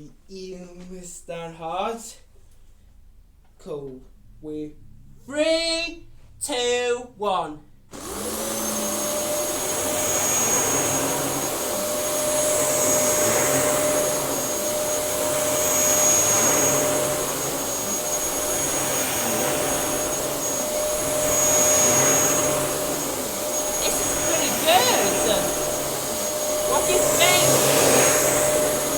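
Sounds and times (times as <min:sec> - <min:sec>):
vacuum cleaner running: 0:07.9 - 0:28.9.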